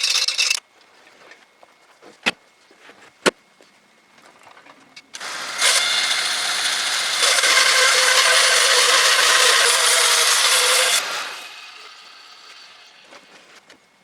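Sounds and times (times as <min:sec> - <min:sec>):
bandsaw mill running: 0:05.2 - 0:13.5.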